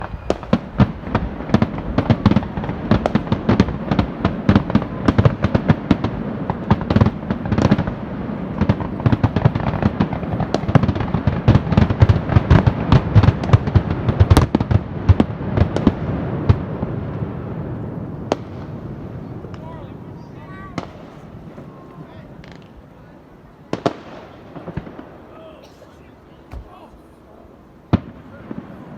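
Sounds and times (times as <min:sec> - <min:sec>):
fireworks bangs and crackles: 0:00.0 - 0:28.9.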